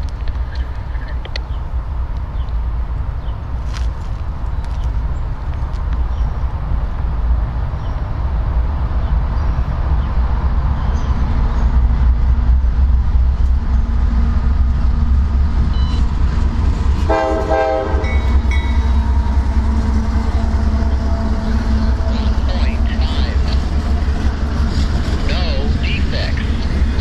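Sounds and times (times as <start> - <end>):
freight train rumbling past: 0.0 - 27.0
train horn blast: 17.0 - 19.1.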